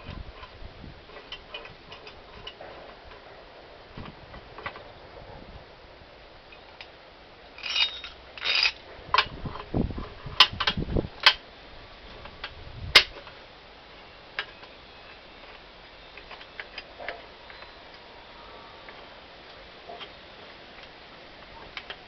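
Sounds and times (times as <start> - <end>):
metal clicks and clanks: 0.0 - 3.2, 7.6 - 11.4
metal scraping rattles: 0.0 - 3.3, 7.6 - 11.4.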